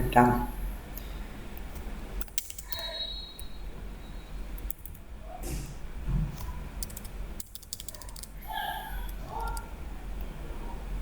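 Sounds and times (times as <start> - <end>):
steady low hum: 0.0 - 11.0
keyboard and mouse clicks: 1.7 - 2.9, 6.8 - 8.4, 9.1 - 9.7.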